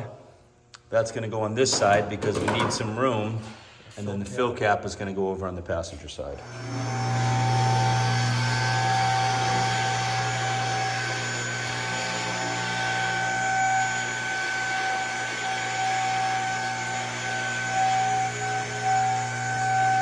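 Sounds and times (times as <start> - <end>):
electric motor humming: 6.4 - 20.0.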